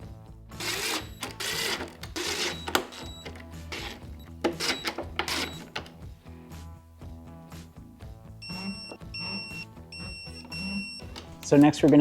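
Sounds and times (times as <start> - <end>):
background music: 0.0 - 12.0
power tool clicking and whirring: 0.6 - 6.0, 10.4 - 12.0.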